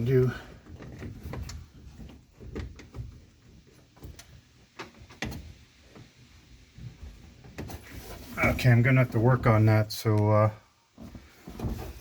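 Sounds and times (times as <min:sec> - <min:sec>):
faint clicks and knocks: 0:00.0 - 0:07.9.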